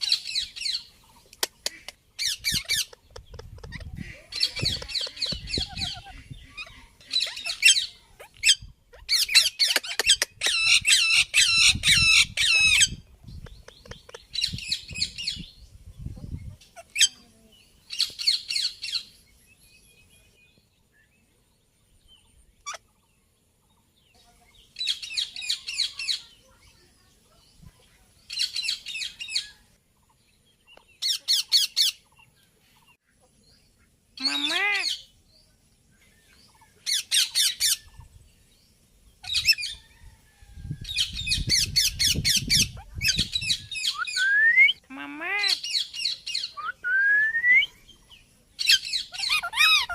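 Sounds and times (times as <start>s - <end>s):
parakeet squawking: 1.6s - 13.0s, 48.7s - 49.9s.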